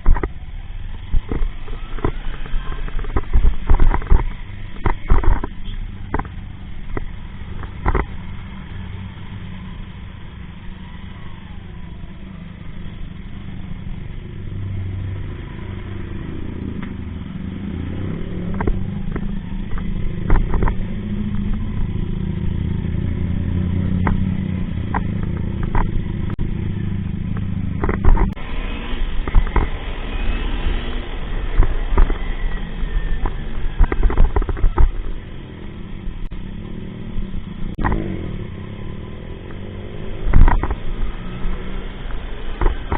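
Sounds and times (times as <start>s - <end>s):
motorcycle engine running: 0.0s - 30.0s.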